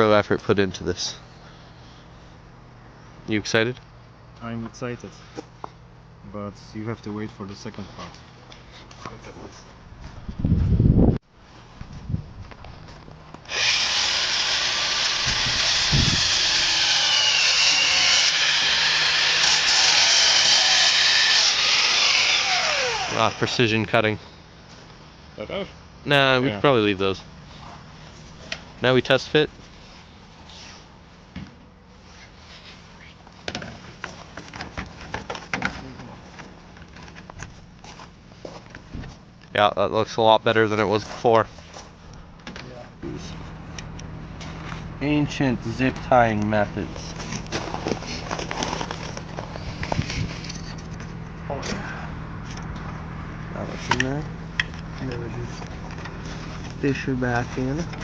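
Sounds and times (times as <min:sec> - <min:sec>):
handheld power tool cutting: 0:13.4 - 0:23.6.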